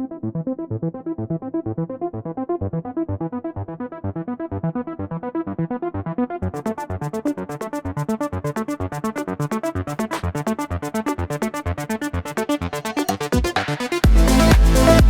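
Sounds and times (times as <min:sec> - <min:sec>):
electronic dance music: 0:09.9 - 0:15.0.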